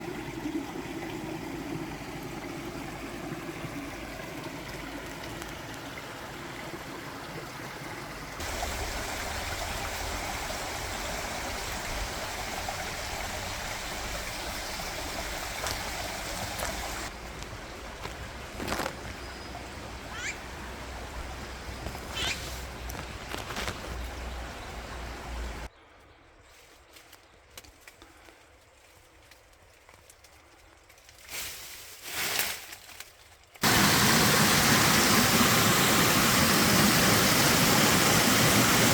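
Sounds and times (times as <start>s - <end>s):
flowing stream water: 0.0s - 25.7s, 33.6s - 38.9s
short bird calls: 20.0s - 20.5s, 21.9s - 22.6s.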